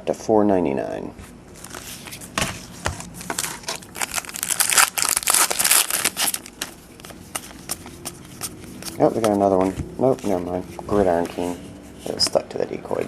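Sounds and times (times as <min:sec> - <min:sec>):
foil wrapper crinkling: 0:03.0 - 0:08.0.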